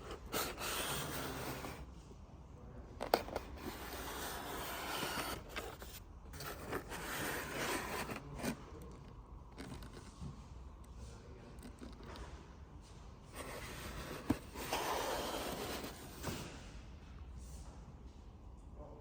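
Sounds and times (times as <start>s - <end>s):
handling scraping and rubbing: 0.0s - 2.0s, 3.0s - 10.4s, 13.3s - 16.5s.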